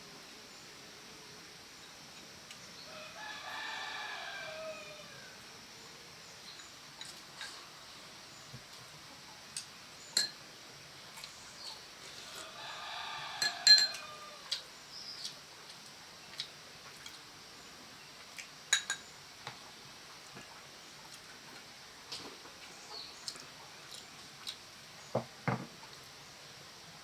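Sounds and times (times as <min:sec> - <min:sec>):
rooster crowing: 0:02.8 - 0:05.4, 0:12.2 - 0:14.7
sharp clinks and knocks: 0:13.4 - 0:14.0.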